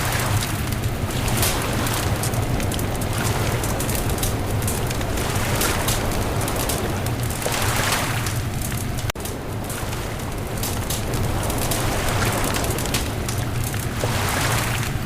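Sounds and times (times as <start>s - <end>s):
bonfire crackling and popping: 0.0s - 15.0s
low rumble: 0.6s - 14.9s.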